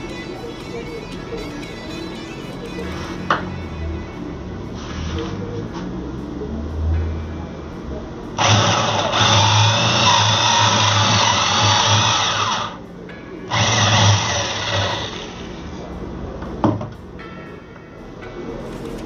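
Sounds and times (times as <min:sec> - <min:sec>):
woodworking power tool running: 0:08.4 - 0:12.8, 0:13.5 - 0:15.4.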